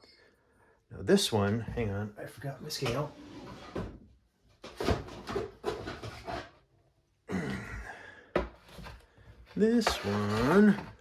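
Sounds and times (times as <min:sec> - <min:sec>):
objects knocking and rustling: 0:02.7 - 0:06.7, 0:08.3 - 0:11.0.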